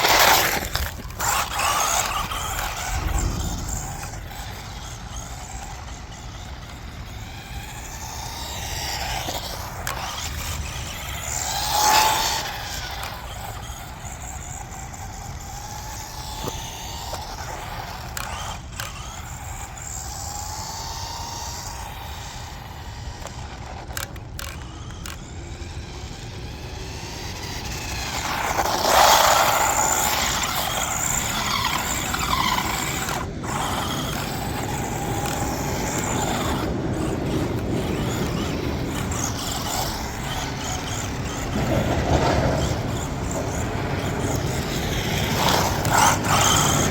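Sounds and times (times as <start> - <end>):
tyre and gear noise: 0.0 - 6.0, 27.2 - 46.9
rc truck electric motor whining: 0.0 - 46.9.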